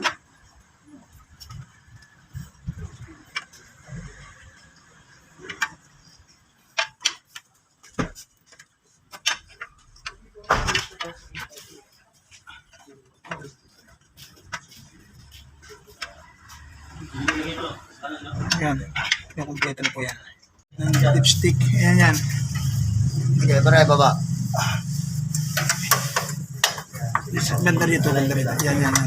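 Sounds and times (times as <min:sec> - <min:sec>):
hand tools clicking and knocking: 0:02.4 - 0:17.6, 0:18.4 - 0:21.2, 0:24.8 - 0:29.0.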